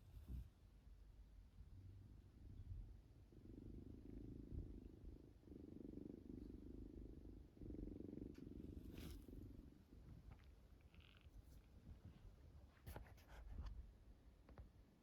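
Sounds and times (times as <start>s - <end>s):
cat purring: 1.5s - 12.2s.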